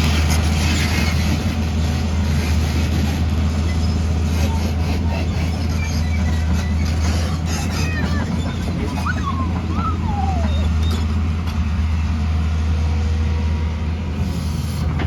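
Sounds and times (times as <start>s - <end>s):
diesel engine droning: 0.0s - 15.0s
short squeals: 3.6s - 11.4s.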